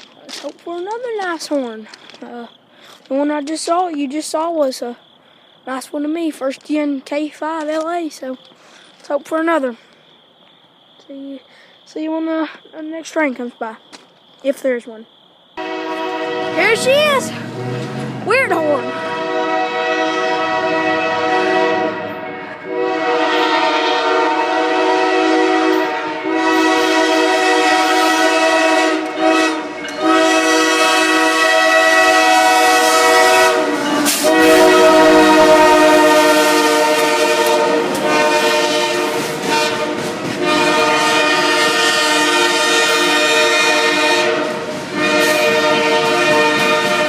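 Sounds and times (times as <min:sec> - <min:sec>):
locomotive air horn chord: 0:15.6 - 0:47.0.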